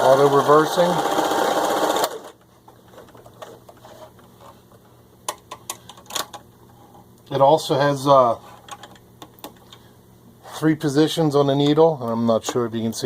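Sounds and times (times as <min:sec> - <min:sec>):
sewing machine running: 0:00.0 - 0:02.4
small handling noises: 0:02.4 - 0:07.4, 0:08.3 - 0:10.0.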